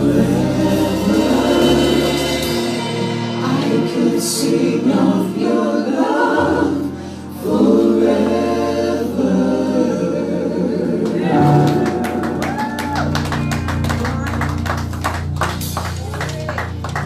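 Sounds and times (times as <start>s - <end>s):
held bass notes: 0.0s - 5.1s
band playing: 0.0s - 6.8s, 10.9s - 17.0s
gospel choir singing: 0.0s - 12.6s.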